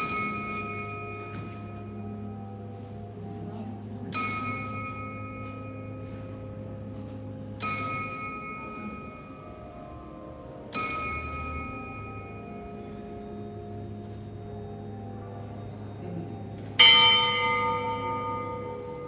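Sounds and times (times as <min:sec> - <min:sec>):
church bell ringing: 0:00.0 - 0:13.5, 0:16.8 - 0:19.0
steady low hum: 0:00.0 - 0:19.0.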